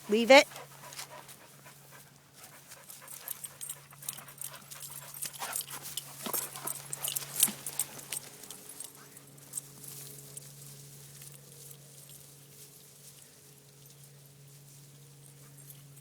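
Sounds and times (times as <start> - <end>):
dogs panting: 0.0 - 9.8
dogs scuffling: 0.5 - 16.0.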